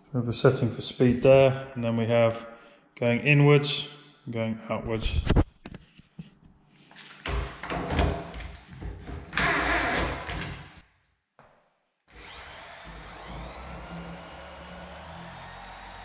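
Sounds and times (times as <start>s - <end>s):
drill motor running: 12.1s - 16.0s.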